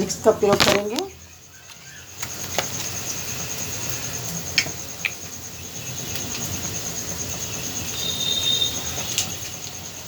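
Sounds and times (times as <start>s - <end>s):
onions sizzling in oil: 0.9s - 10.0s.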